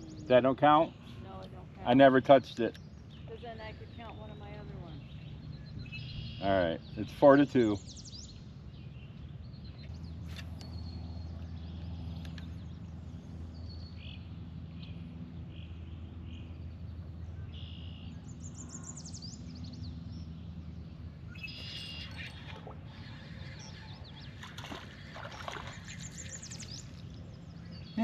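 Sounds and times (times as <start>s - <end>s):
steady low hum: 0.0s - 28.0s
birds chirping and calling: 21.3s - 28.0s.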